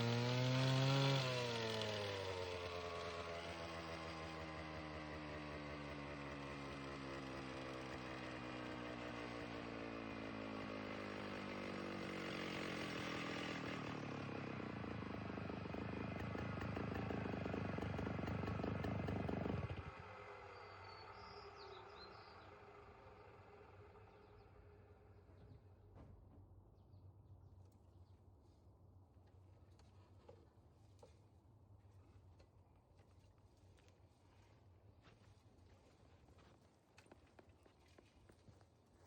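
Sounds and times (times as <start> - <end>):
stump grinder engine: 0.0 - 24.8.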